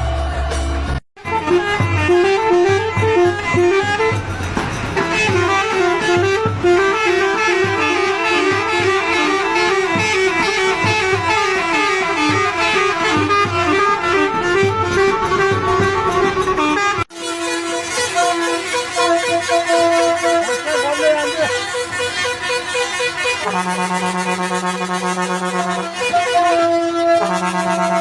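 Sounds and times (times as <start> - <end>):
musical air horn tune: 1.2 - 28.0.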